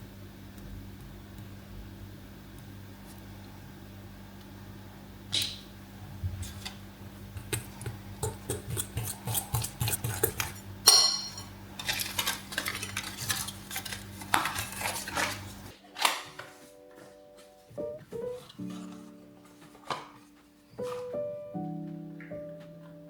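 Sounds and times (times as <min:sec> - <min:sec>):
metal utensils scraping dishes: 0:08.2 - 0:16.5
loud ringing clink: 0:10.9 - 0:11.5
soft music notes: 0:15.8 - 0:23.0.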